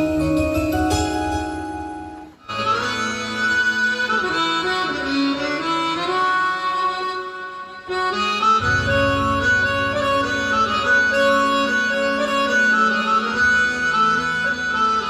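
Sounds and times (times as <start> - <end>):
synthesizer reed-like melody: 0.0 - 2.4, 8.5 - 14.3.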